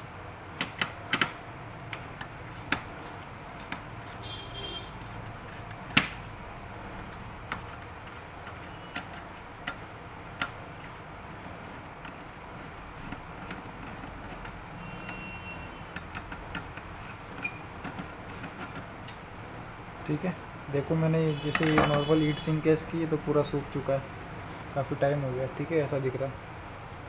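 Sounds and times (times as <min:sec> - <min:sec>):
sharp clicks and knocks: 0:00.5 - 0:04.2, 0:05.0 - 0:19.3, 0:21.5 - 0:22.1.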